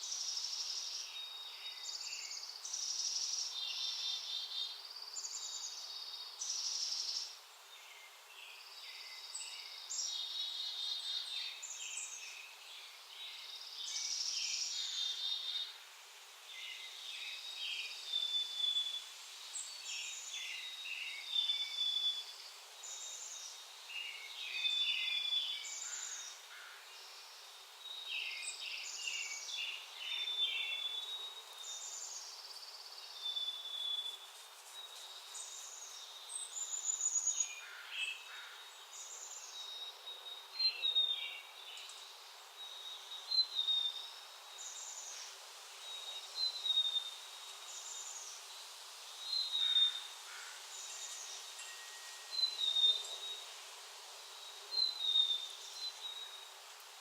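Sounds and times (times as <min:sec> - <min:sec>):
songbirds chirping: 0:00.0 - 0:57.0
faint steady high tone: 0:51.6 - 0:53.2.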